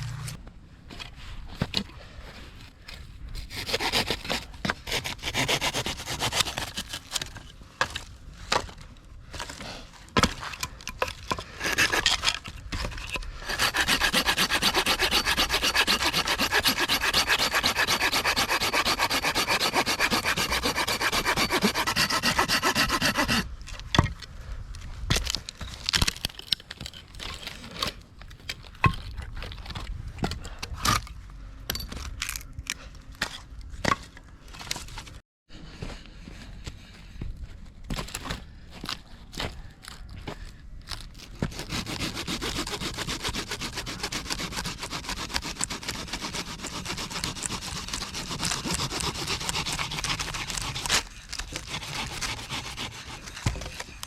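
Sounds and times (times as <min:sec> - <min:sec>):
hand saw cutting firewood: 0:03.4 - 0:08.0, 0:09.4 - 0:23.5, 0:40.9 - 0:54.0.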